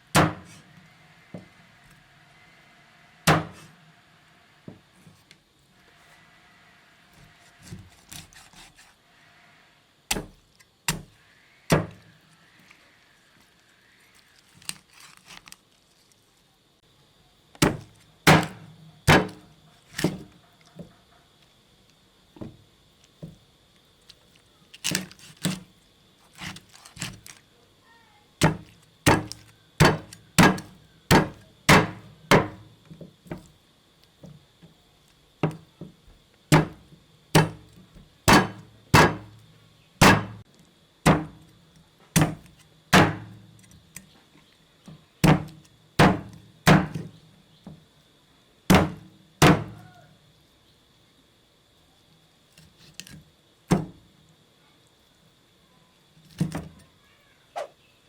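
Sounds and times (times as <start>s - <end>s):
knife chopping on wooden board: 3.3s - 3.7s, 10.1s - 11.1s, 11.7s - 12.0s, 17.6s - 20.2s, 28.4s - 32.6s, 37.4s - 37.7s, 38.3s - 39.3s, 40.0s - 40.4s, 41.0s - 41.4s, 42.2s - 43.4s, 45.2s - 47.0s, 48.7s - 49.8s.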